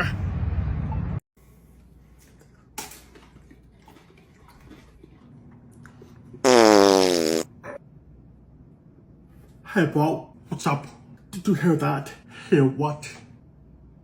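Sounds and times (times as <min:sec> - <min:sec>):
loud buzzy fart: 0:06.4 - 0:07.5.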